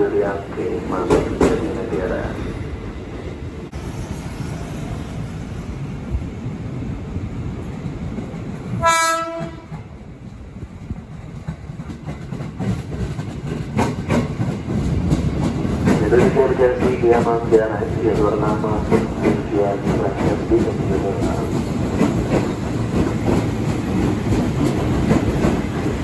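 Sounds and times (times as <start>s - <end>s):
train rumbling: 0.0s - 26.0s
train horn blast: 8.8s - 9.8s.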